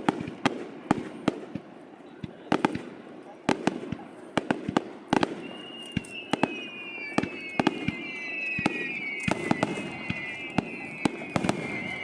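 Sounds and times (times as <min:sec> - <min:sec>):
fireworks bursting: 0:00.0 - 0:12.0
fireworks whistling: 0:03.5 - 0:12.0.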